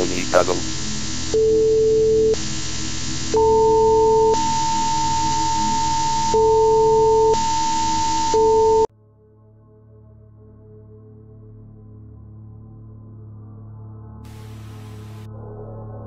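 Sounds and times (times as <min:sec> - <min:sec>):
static hiss: 0:00.0 - 0:06.4, 0:14.3 - 0:15.3.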